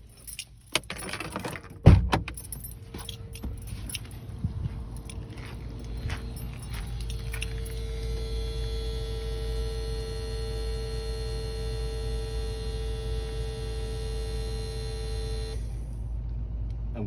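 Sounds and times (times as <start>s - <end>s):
steady electrical buzz: 3.4s - 16.2s.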